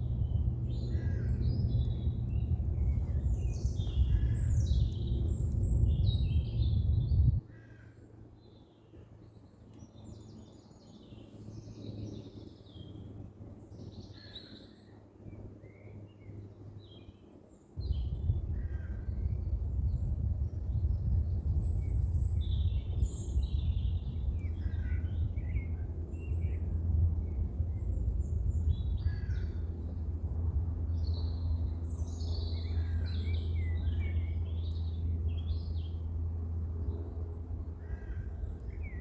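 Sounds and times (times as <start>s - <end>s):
birds chirping: 0.0s - 7.3s, 30.8s - 36.2s
low rumble: 0.0s - 7.4s, 17.8s - 39.0s.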